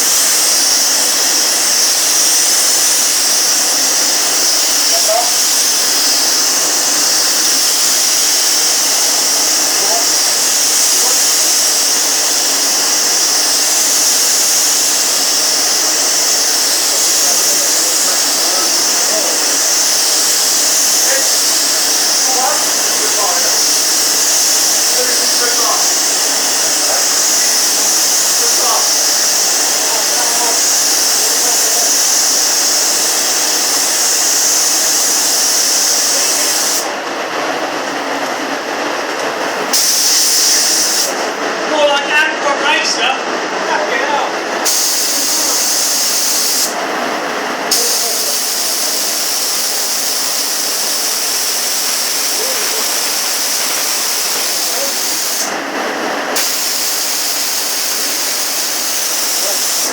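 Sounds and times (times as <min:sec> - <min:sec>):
paint spray gun hissing: 0:00.0 - 0:37.2, 0:39.3 - 0:41.5, 0:44.5 - 0:59.9.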